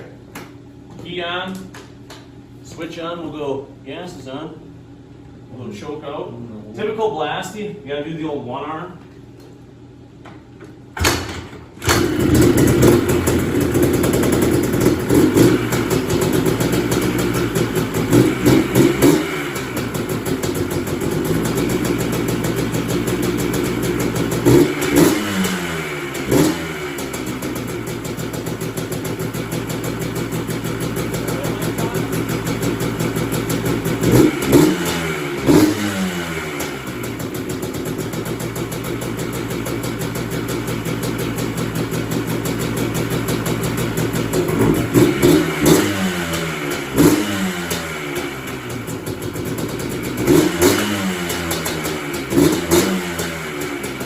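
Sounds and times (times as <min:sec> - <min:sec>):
engine kick-started: 0:11.0 - 0:17.7
engine throttle blips and idle: 0:11.0 - 0:54.0.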